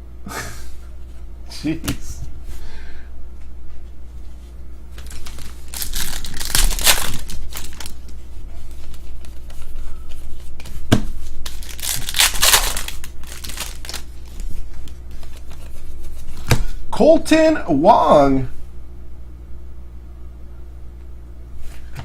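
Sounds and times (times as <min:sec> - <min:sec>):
card pack wrappers tearing: 0:05.0 - 0:08.1, 0:11.4 - 0:15.6.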